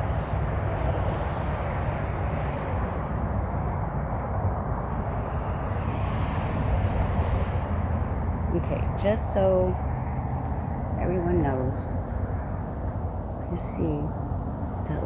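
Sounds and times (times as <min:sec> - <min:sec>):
insects trilling: 0:00.0 - 0:15.0
steady low rumble: 0:00.0 - 0:15.0.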